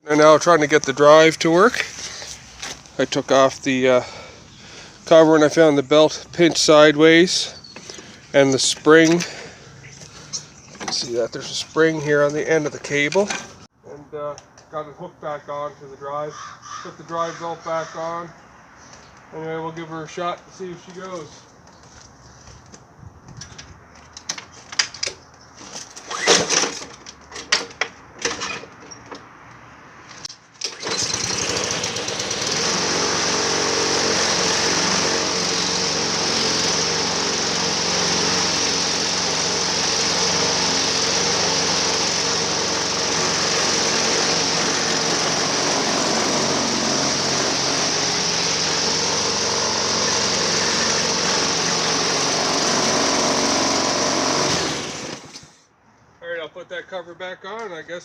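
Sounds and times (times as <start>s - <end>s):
lawn mower engine running: 0.0s - 13.6s, 30.6s - 55.5s.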